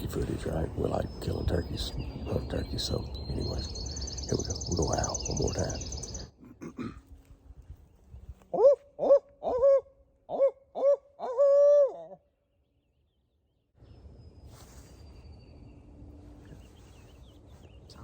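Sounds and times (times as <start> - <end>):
owl call hoots: 8.5 - 12.2.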